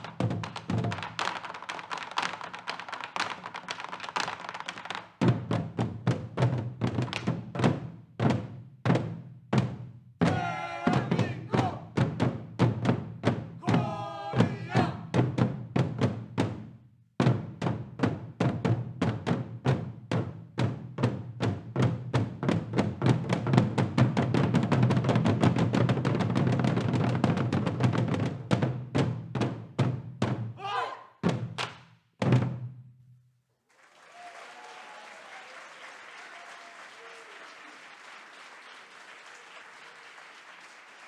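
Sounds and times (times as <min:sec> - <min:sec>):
drums struck in fast rhythm: 0:00.0 - 0:32.9.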